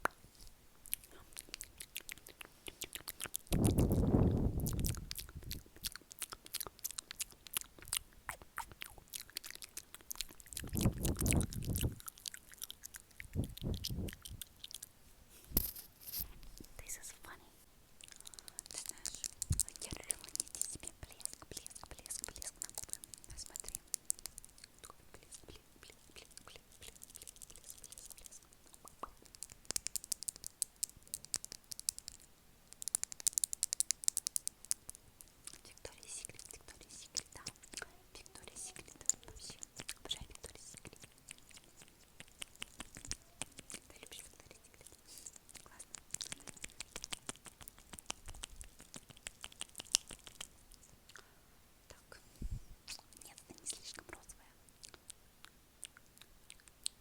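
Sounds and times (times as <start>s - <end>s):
wet mouth clicks and smacks: 0.8s - 14.9s, 18.0s - 51.3s, 52.9s - 57.0s
low muffled rumbles: 3.5s - 5.7s, 10.6s - 12.0s.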